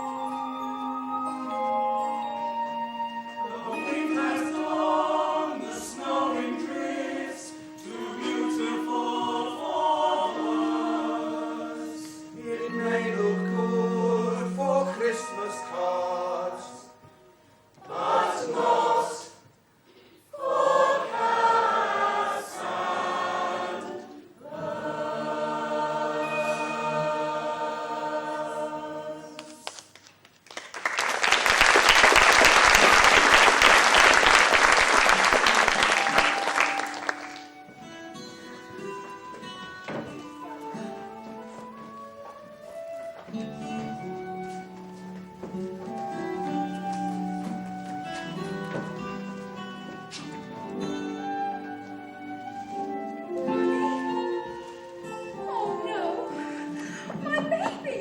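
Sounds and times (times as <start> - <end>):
cast singing a musical number: 3.3 - 17.0, 17.8 - 19.4, 20.3 - 29.6
audience applause: 29.6 - 37.6.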